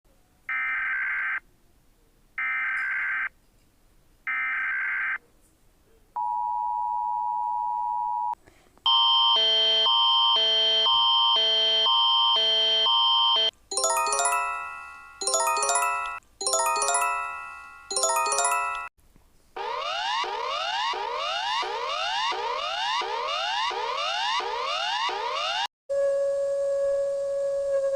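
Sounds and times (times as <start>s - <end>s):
loud pulsing alarm: 9.0s - 13.5s, 19.6s - 25.7s
chime-like electronic notes: 13.7s - 18.9s.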